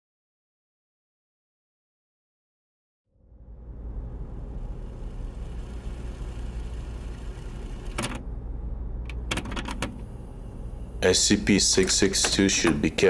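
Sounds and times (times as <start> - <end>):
steady low rumble: 3.2 - 13.0.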